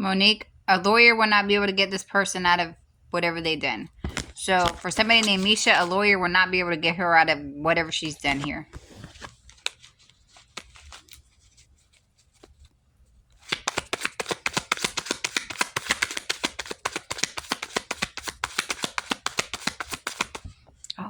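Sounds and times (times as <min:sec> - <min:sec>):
cards being shuffled: 0:04.0 - 0:06.1, 0:07.8 - 0:20.6.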